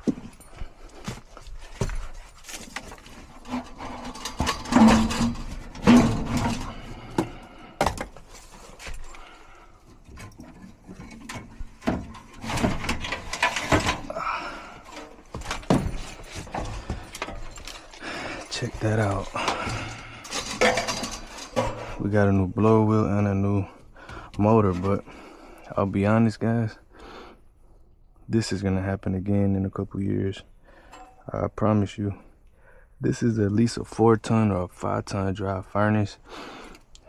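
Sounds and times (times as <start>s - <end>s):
metal parts and tools clattering: 0.0s - 22.1s, 30.8s - 31.3s.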